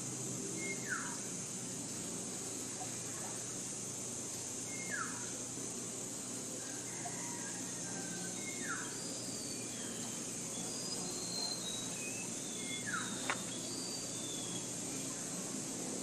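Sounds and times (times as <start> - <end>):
insect drone: 0.0 - 16.0
downward-sweeping bird calls: 0.6 - 1.3, 4.6 - 5.4, 6.7 - 14.8
bird chirps: 8.4 - 14.7.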